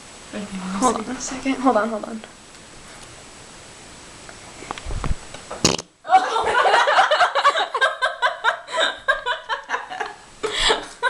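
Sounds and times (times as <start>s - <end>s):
sharp knock: 5.6s - 5.9s.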